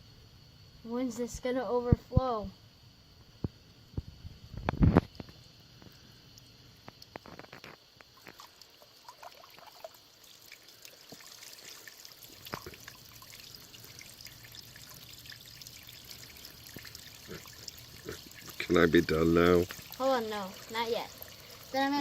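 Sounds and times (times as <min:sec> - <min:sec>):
light clicks and splashes: 0:04.6 - 0:22.0
water trickling and pouring: 0:06.3 - 0:22.0.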